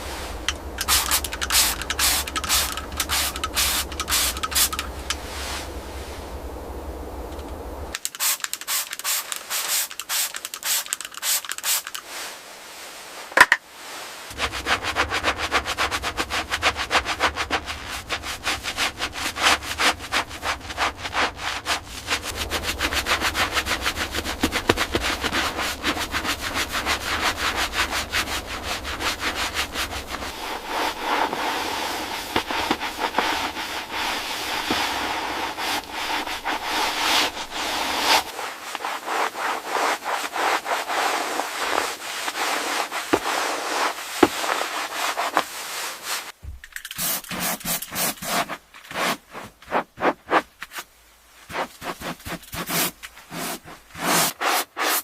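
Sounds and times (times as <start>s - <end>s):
low hum: 0.0s - 8.0s, 14.3s - 38.8s
rubbing strokes on a surface: 13.8s - 46.4s, 47.0s - 55.0s.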